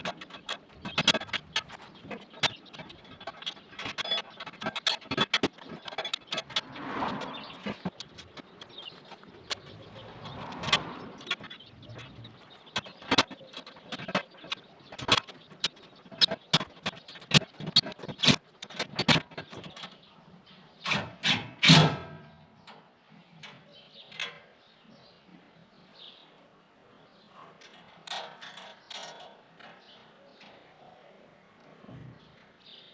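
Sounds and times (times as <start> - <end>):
tools clicking and clinking: 0.0 - 20.0.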